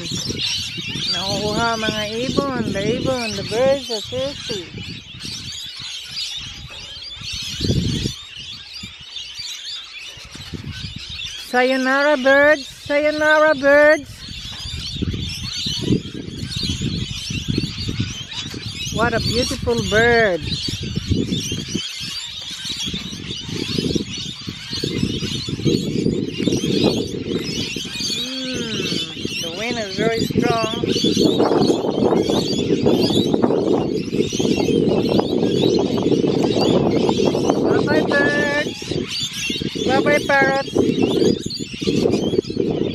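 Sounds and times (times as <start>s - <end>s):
parrots chattering and chirping: 0.0s - 42.9s
wind buffeting microphone: 0.0s - 42.9s
parrots chattering: 24.6s - 33.4s, 34.2s - 42.4s.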